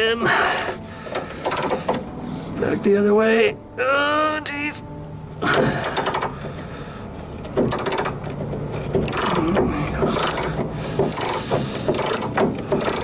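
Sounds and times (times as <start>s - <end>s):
ratchet wrench clicking: 1.1s - 2.0s, 5.8s - 6.4s, 7.7s - 8.4s, 9.0s - 9.4s, 10.1s - 13.0s.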